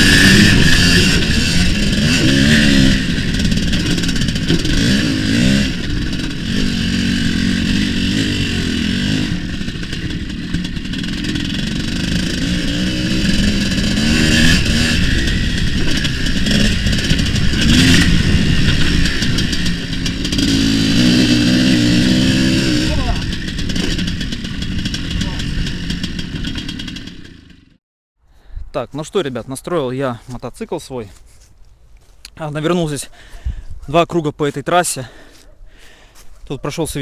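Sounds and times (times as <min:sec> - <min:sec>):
motorcycle engine revving: 0:00.0 - 0:27.8.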